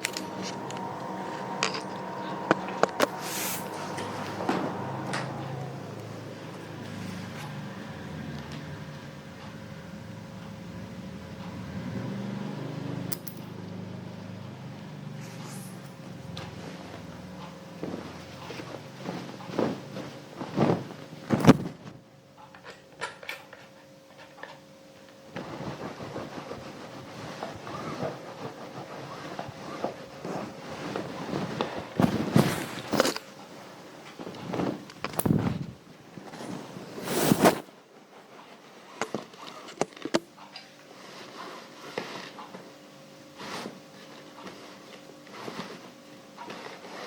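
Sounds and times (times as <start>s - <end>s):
rustling swishes: 0.0s - 7.5s, 34.4s - 37.7s
iron steam rushes: 0.0s - 8.3s.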